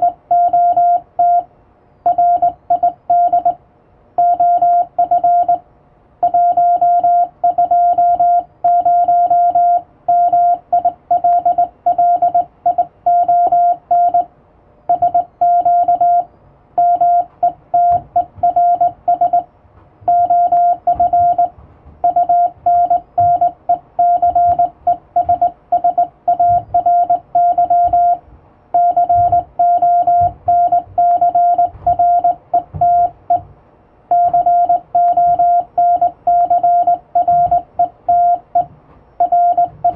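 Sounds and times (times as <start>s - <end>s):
morse code beeping: 0.0s - 3.6s, 4.2s - 5.6s, 6.2s - 14.3s, 14.9s - 33.5s, 34.1s - 39.9s
faint low knocks: 19.8s - 23.5s, 24.2s - 28.2s, 28.8s - 33.6s.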